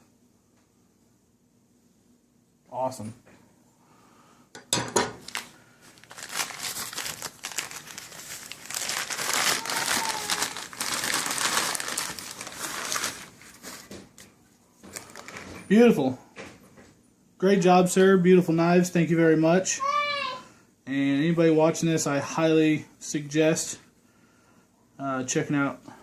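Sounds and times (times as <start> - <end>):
packaging crinkling: 5.1 - 15.6.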